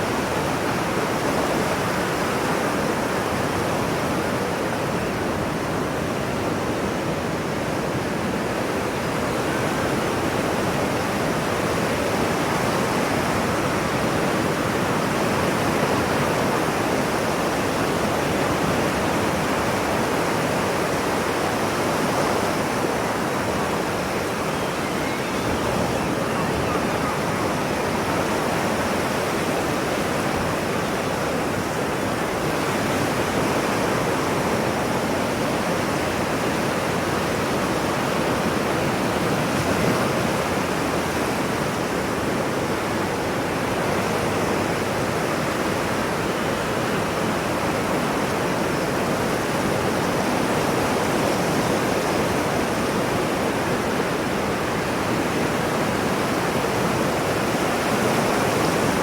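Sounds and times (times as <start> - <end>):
ocean surf rushing: 8.5 - 59.0.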